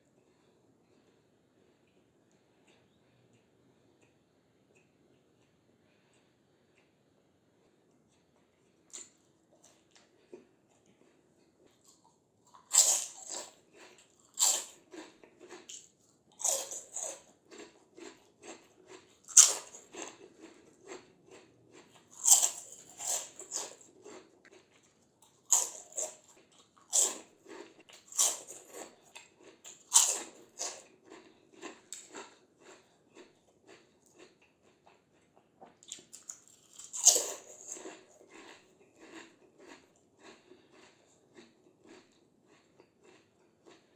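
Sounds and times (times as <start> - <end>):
crackly chewing: 0.2 - 43.9
crunching bites of fried snacks: 8.9 - 43.9.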